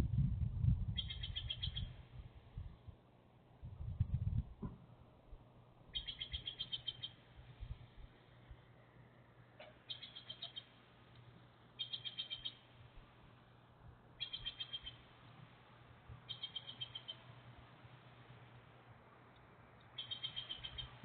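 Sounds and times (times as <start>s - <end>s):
faint low hum: 0.0s - 21.0s
small bird trilling: 1.0s - 1.9s, 6.0s - 7.2s, 11.8s - 12.6s, 14.2s - 15.0s, 16.3s - 17.2s, 20.0s - 21.0s.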